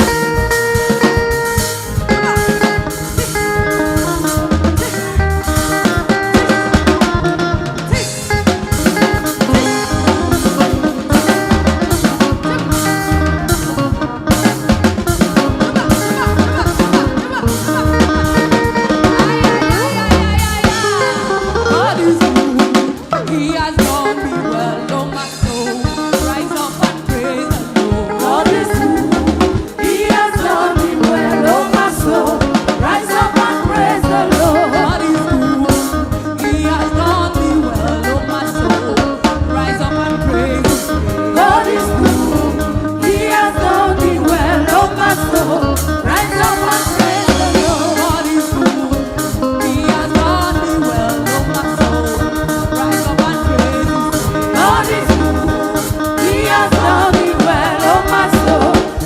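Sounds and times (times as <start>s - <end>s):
drum kit beat: 0.0s - 59.0s
gospel band playing: 0.0s - 59.0s
singing: 19.1s - 59.0s.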